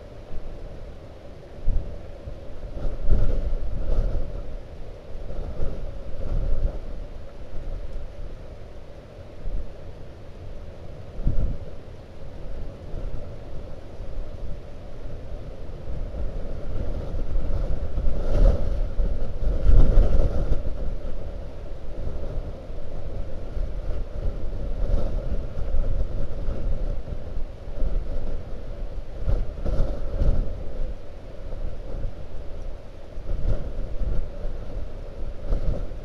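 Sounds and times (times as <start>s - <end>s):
wind buffeting microphone: 0.0s - 36.0s.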